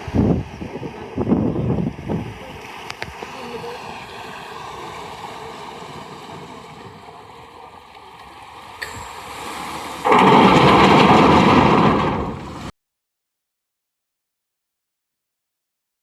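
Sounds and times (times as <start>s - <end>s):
rush of wind or spray: 0.0s - 7.5s, 8.4s - 12.7s
motorboat running: 0.0s - 12.7s
wind noise: 0.0s - 12.7s.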